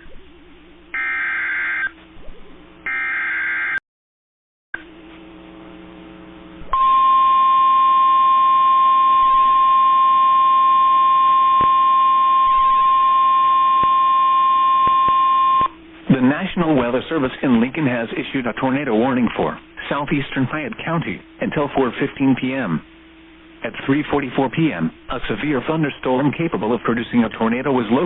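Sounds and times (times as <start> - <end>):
steady warning alarm tone: 0.9 - 2.0, 2.8 - 3.8, 6.7 - 15.8
buzzy digital data tones: 6.7 - 17.2
faint radio hiss: 15.7 - 28.0.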